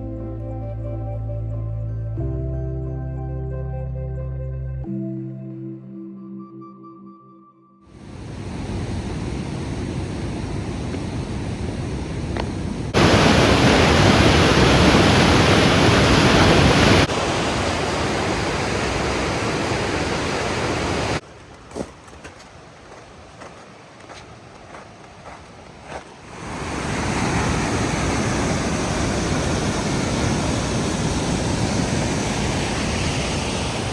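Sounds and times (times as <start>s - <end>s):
waterfall rushing: 8.0s - 21.2s, 26.2s - 33.9s.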